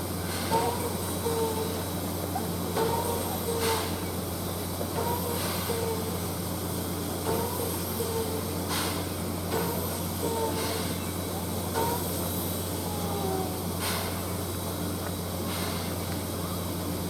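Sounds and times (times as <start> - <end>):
steam hiss bursts: 0.0 - 17.0
steam locomotive hum: 0.0 - 17.0.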